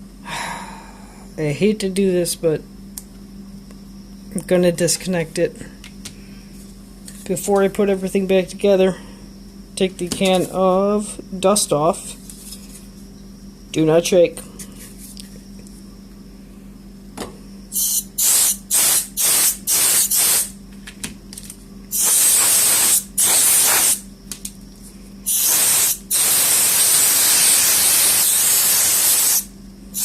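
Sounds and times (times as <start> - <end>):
compressed air spraying: 17.7 - 20.5, 21.9 - 24.0, 25.2 - 30.0.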